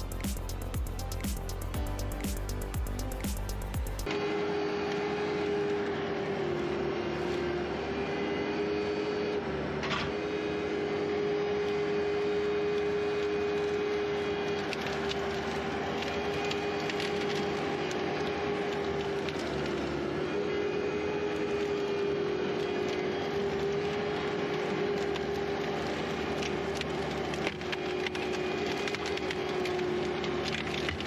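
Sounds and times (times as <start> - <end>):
skid steer engine running: 0.0 - 31.0.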